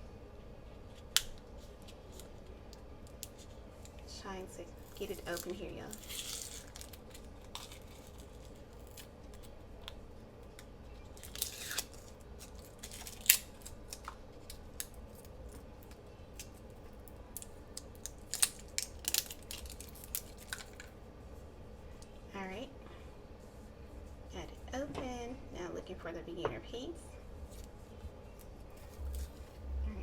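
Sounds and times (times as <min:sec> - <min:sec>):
plastic wrap crinkling and clicking: 0:00.9 - 0:04.0, 0:04.8 - 0:21.0, 0:28.3 - 0:29.6.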